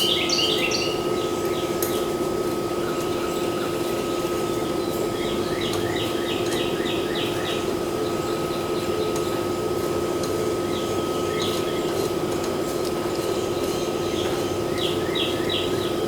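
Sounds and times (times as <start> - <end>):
bird singing falling chirps: 0.0 - 1.7
steady hum: 0.0 - 16.0.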